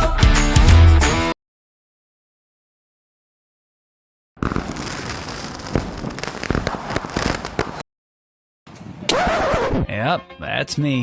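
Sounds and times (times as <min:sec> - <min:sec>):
fireworks popping and crackling: 0:04.4 - 0:07.8.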